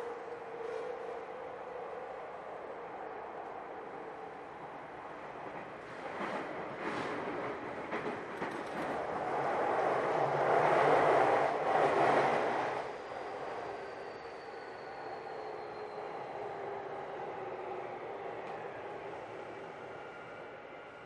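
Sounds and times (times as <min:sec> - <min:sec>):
electric train rumble: 0:00.0 - 0:21.0.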